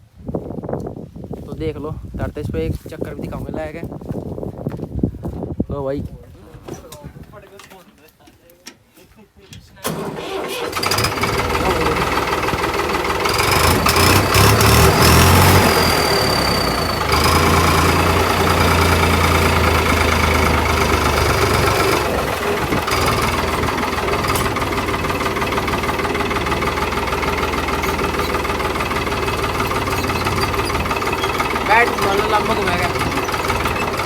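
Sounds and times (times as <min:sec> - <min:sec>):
tractor diesel engine revving: 0:09.8 - 0:34.0.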